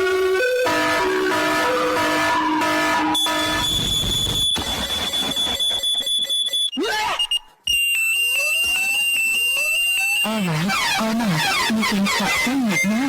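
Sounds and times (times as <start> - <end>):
high electronic alarm tone: 0.7 - 10.5.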